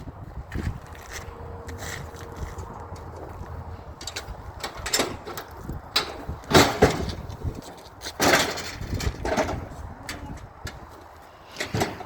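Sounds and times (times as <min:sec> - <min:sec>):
engine running low: 0:00.0 - 0:12.0
scrap metal knocks and scrapes: 0:11.5 - 0:12.0.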